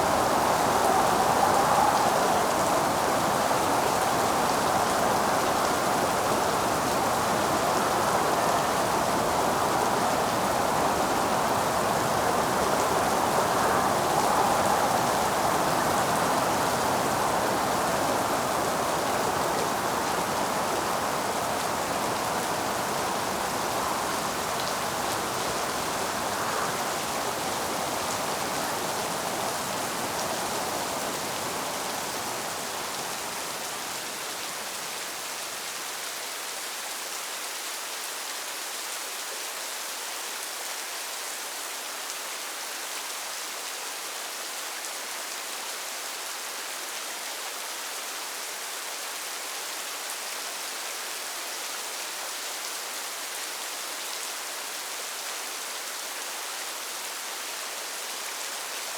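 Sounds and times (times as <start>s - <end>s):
rainfall hiss: 0.0s - 58.9s.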